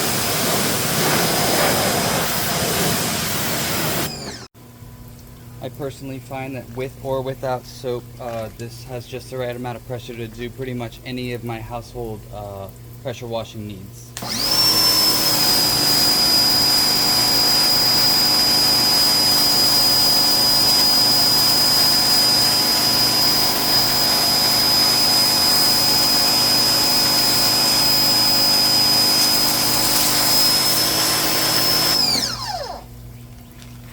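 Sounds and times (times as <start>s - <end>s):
electric pressure washer whining: 0.0s - 4.5s, 14.2s - 32.9s.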